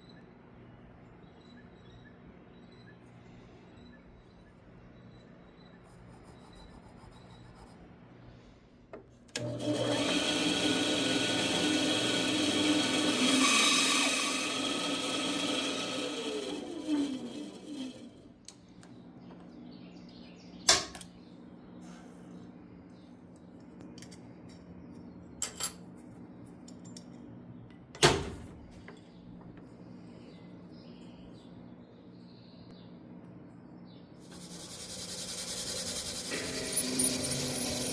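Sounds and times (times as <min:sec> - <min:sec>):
low shop hum: 0:00.0 - 0:37.9
lathe motor running: 0:09.4 - 0:18.2, 0:34.2 - 0:37.9.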